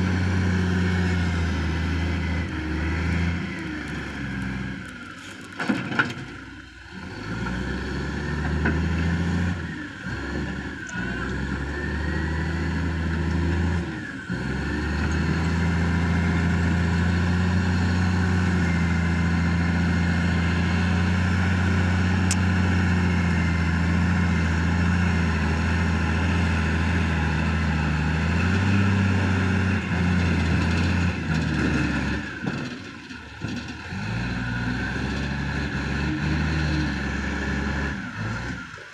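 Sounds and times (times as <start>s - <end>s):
heavy diesel engine running: 0.0s - 38.9s.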